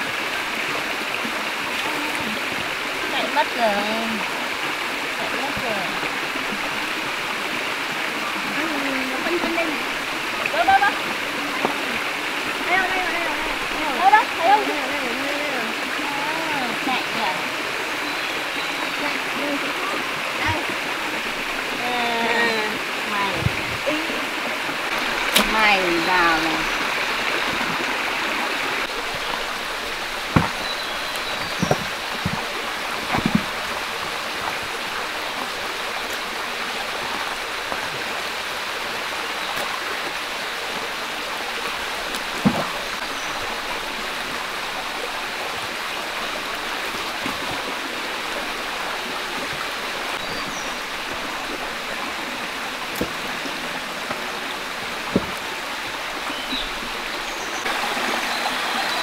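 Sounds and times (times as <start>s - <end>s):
stream water rushing: 0.0s - 59.0s
sharp knocks: 30.3s - 30.8s.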